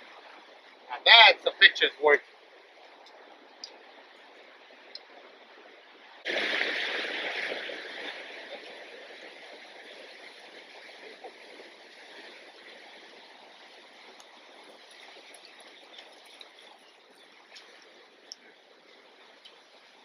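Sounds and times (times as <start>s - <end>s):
river water rushing: 6.2s - 20.0s.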